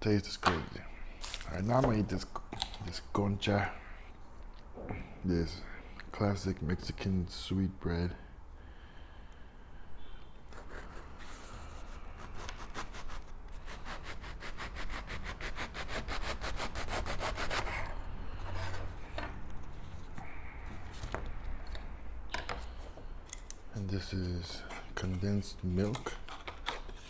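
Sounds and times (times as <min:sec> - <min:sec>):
knife sawing through bread: 0:10.5 - 0:19.0.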